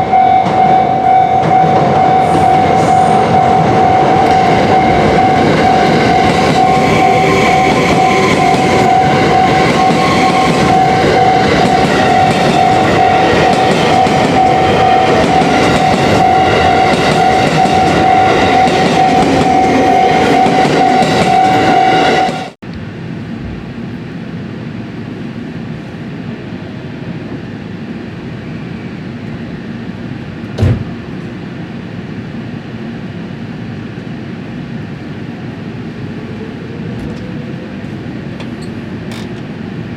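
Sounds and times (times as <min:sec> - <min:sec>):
crossing warning bell ringing: 0:00.0 - 0:22.5
train rumbling over crossing: 0:00.0 - 0:39.9
steady background noise: 0:22.6 - 0:39.9.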